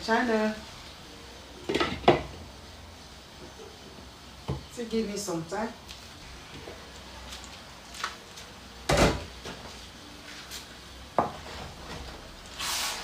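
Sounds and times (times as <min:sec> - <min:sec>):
short scraping hiss: 0:12.6 - 0:13.0.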